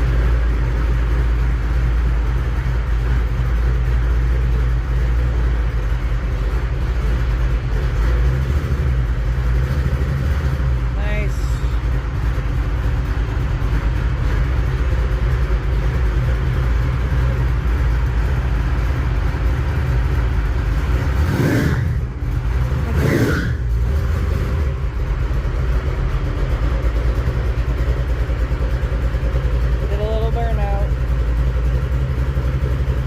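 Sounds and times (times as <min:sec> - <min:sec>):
pickup engine revving: 0:05.5 - 0:30.6.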